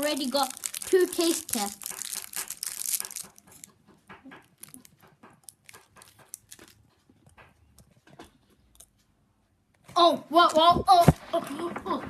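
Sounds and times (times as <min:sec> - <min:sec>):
child chewing chocolate: 0:00.0 - 0:09.2.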